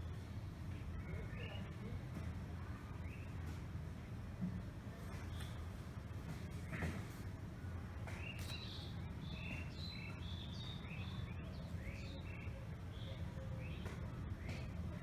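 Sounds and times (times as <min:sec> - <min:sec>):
small birds chirping: 0:08.0 - 0:14.7.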